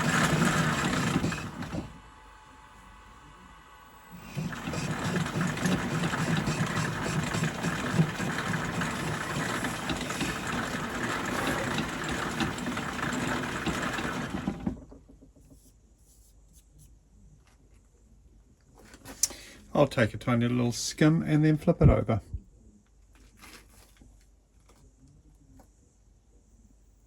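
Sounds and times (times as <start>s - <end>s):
metal lathe tool scraping metal: 0.0s - 1.9s, 4.2s - 14.5s.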